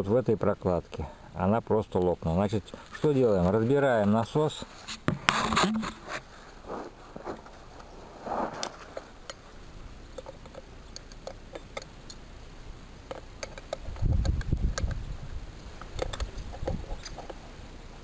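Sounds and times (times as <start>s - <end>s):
short rustle: 4.5s - 9.2s.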